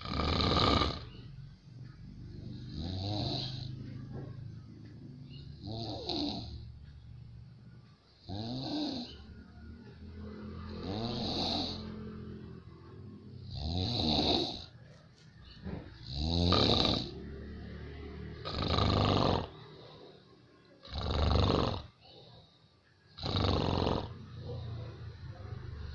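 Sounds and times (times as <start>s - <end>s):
loud rasping snores: 0.0s - 1.2s, 2.4s - 3.9s, 5.5s - 6.7s, 8.2s - 9.3s, 10.3s - 12.5s, 13.4s - 14.8s, 15.8s - 20.2s, 20.8s - 22.2s, 23.1s - 25.0s.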